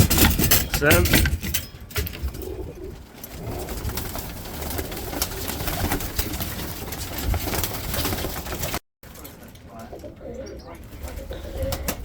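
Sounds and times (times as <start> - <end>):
pigeons cooing: 2.0 - 8.8, 9.4 - 12.0.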